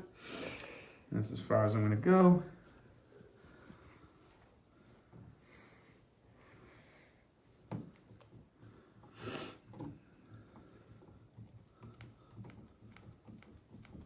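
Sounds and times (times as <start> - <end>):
loud breath through the nose: 9.1 - 9.7.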